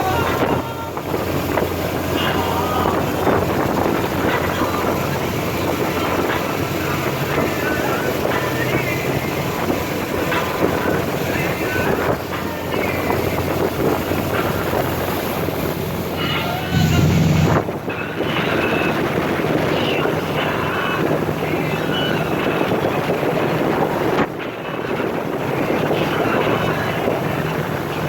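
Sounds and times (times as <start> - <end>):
boat engine: 0.0 - 28.0
faint voices: 0.0 - 28.0
wind buffeting microphone: 0.0 - 28.0.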